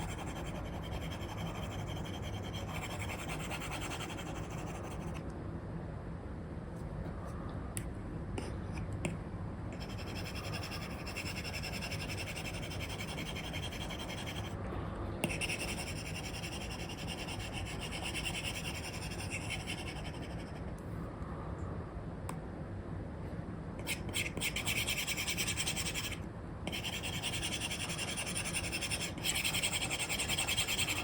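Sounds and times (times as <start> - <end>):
stylus scratching on screen: 0.0 - 5.2, 9.8 - 14.6, 15.2 - 20.7, 23.8 - 31.0.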